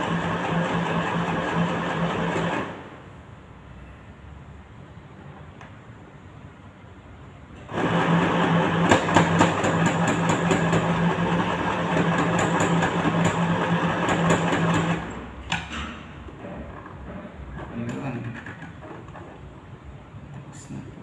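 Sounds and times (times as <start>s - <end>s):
sewing machine running: 0.0s - 2.8s, 7.7s - 15.2s.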